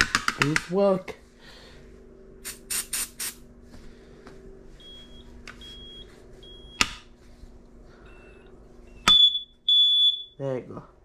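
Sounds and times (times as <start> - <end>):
hissy bursts: 2.4 - 3.4
smoke alarm beeps: 4.8 - 6.9, 8.0 - 10.4.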